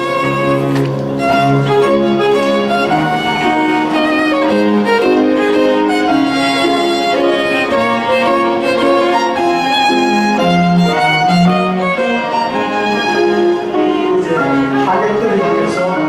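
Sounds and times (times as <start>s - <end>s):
lower accompaniment: 0.0s - 16.0s
violin melody: 0.0s - 16.0s.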